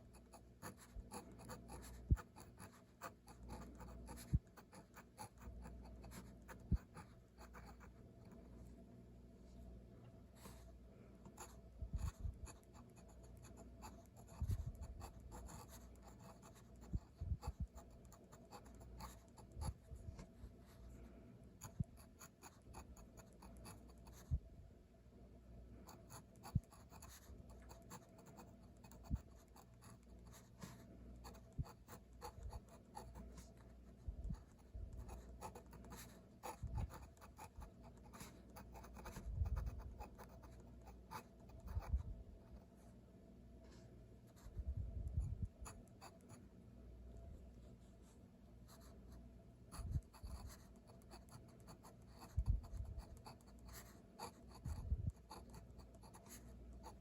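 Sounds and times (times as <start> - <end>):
pen scratching on paper: 0.1 - 8.4, 11.3 - 20.3, 21.6 - 24.3, 25.9 - 42.7, 45.1 - 46.4, 49.7 - 57.0.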